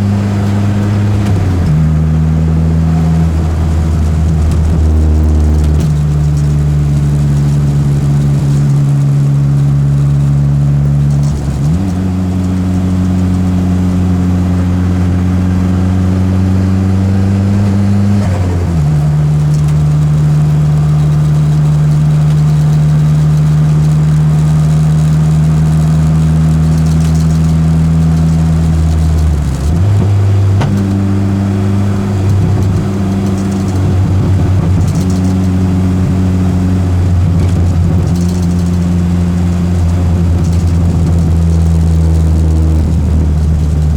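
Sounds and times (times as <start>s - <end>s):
car engine running hard: 0.0s - 43.9s.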